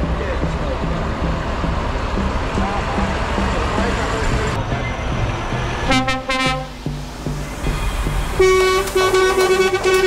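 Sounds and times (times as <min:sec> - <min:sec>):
engine low rumble: 0:00.0 - 0:10.0
truck air horn blasts: 0:05.9 - 0:06.8, 0:08.4 - 0:10.0.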